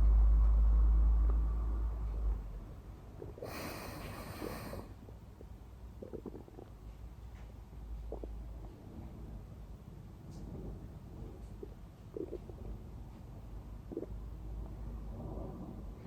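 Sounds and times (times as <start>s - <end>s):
stomach growling: 3.2s - 6.8s, 8.0s - 8.8s, 11.1s - 12.8s, 13.9s - 16.0s.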